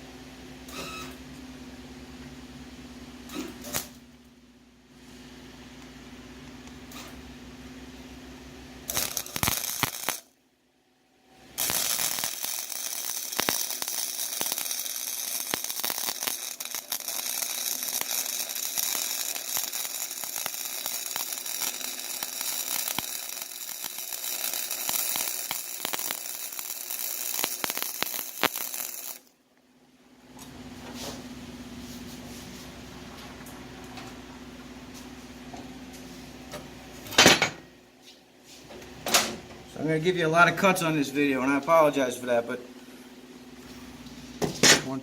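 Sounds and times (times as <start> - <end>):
low steady hum: 0.0 - 14.6, 38.6 - 45.0
arc welding crackling sizzle: 3.3 - 4.0, 6.8 - 7.3, 8.8 - 10.4, 11.5 - 29.4.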